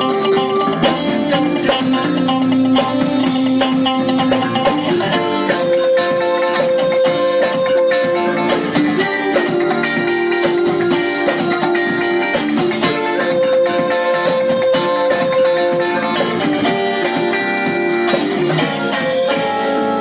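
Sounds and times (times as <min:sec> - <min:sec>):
jazz fusion band playing: 0:00.0 - 0:20.0.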